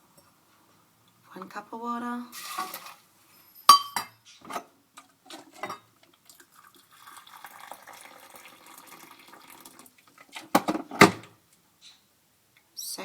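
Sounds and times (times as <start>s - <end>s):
kitchenware clanking: 2.3s - 3.0s, 3.6s - 4.7s, 5.3s - 6.0s, 10.4s - 11.3s
water pouring into a saucepan: 2.3s - 3.1s, 6.0s - 10.4s.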